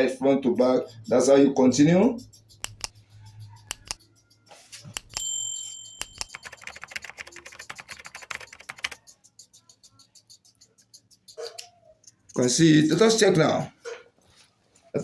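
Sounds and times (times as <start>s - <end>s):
bright metallic ring: 5.1s - 6.3s.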